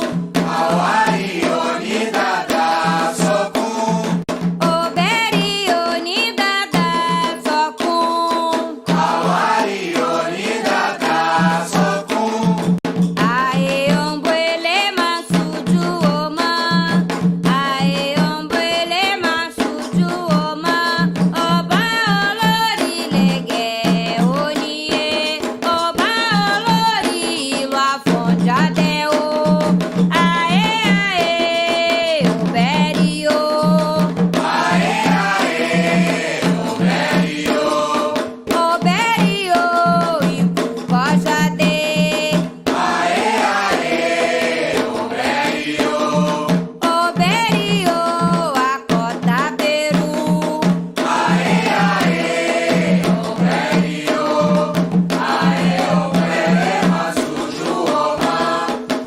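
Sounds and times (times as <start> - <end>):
voices singing a chant: 0.0 - 4.2, 8.9 - 12.8, 33.2 - 38.3, 42.7 - 46.6, 51.0 - 59.0
drums and percussion: 0.0 - 59.0.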